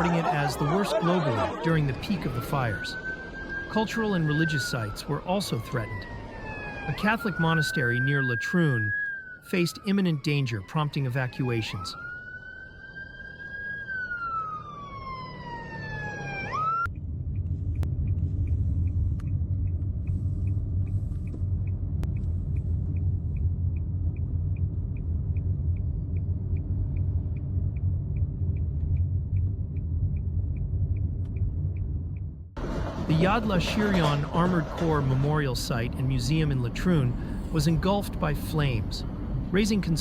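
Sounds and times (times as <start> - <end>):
emergency vehicle siren wailing: 0.0 - 16.9, 32.6 - 40.0
steady low rumble: 16.8 - 40.0.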